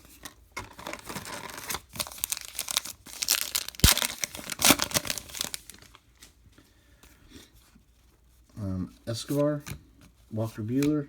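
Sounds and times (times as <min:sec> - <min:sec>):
wrapper tearing and crinkling: 0:00.6 - 0:06.0.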